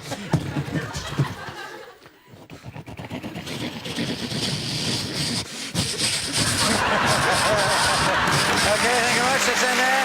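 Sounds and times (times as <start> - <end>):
man making engine sounds by mouth: 2.4 - 9.3
audience noise: 6.4 - 10.0.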